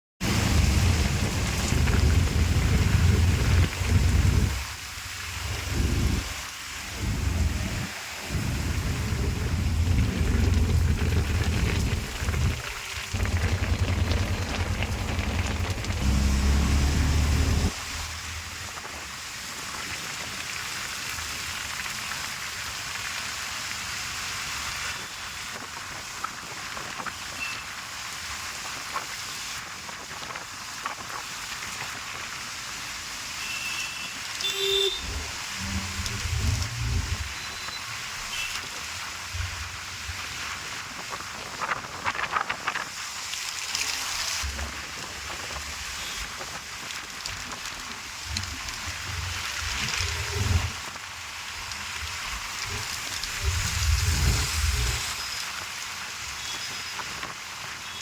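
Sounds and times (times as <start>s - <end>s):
heavy rain pouring: 0.2s - 58.0s
loud low rumble: 0.3s - 4.8s, 7.0s - 18.1s.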